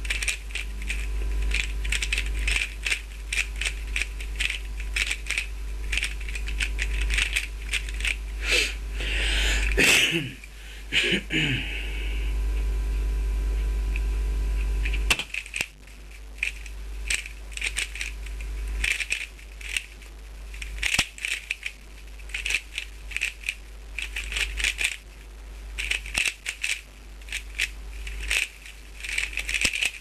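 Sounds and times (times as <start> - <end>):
plastic puzzle cube clicking: 0.0 - 8.2, 14.8 - 25.0, 25.8 - 30.0
steady hum: 0.0 - 30.0.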